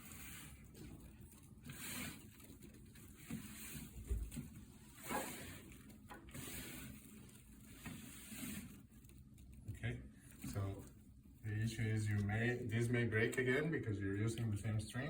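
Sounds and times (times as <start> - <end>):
blind rustling: 0.0 - 9.6.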